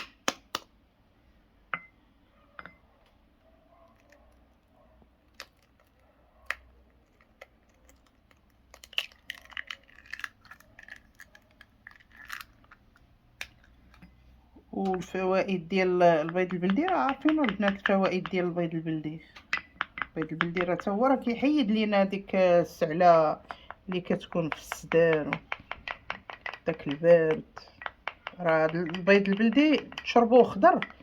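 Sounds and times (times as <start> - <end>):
kitchen objects clicking and knocking: 13.4 - 21.2, 23.0 - 31.0.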